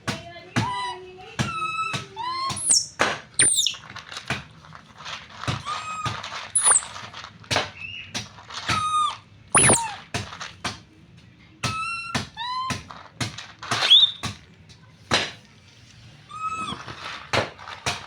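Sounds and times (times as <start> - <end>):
baby monkey squealing: 0.6 - 3.8, 5.6 - 7.0, 8.7 - 10.0, 11.7 - 12.8, 13.8 - 14.2, 16.3 - 17.0.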